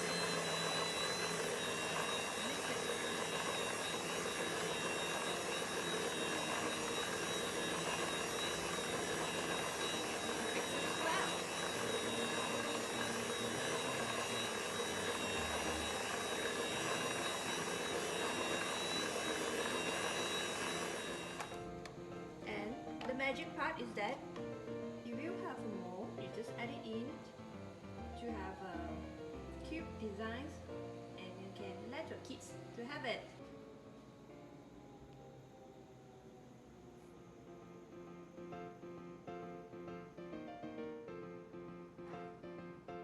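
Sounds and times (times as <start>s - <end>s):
thin high whine: 0.0s - 23.7s
mixer motor running: 0.0s - 24.5s.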